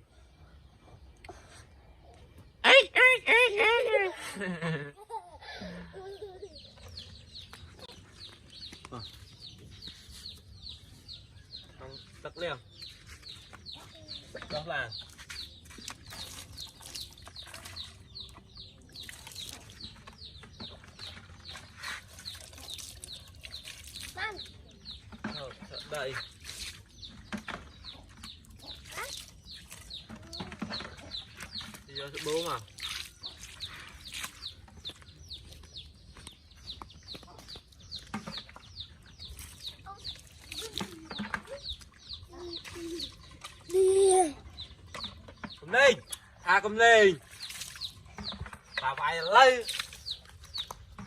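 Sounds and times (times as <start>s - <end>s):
bird chirping: 6.0s - 51.0s
chicks peeping: 6.2s - 22.0s, 22.8s - 43.7s, 47.4s - 51.0s.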